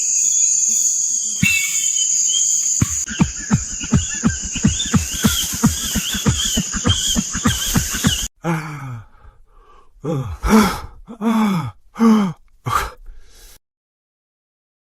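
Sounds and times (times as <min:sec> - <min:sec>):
high insect-like hiss: 0:00.0 - 0:08.3
rhythmic croaking chorus: 0:01.4 - 0:08.3.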